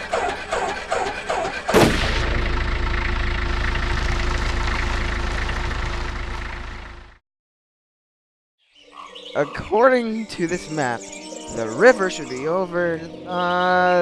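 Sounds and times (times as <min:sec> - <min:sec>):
vehicle engine rumble: 0:00.0 - 0:07.2.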